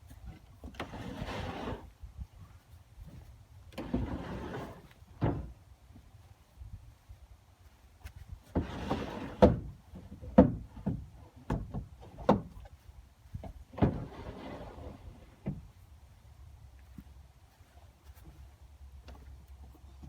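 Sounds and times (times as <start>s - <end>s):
wooden boards sliding and scraping: 0.0s - 6.1s, 8.0s - 15.8s
sharp knocks of wood: 10.4s - 12.7s.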